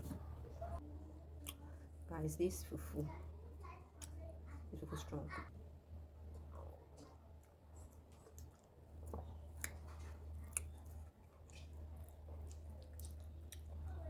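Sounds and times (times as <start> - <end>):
person chewing wetly: 6.2 - 14.0.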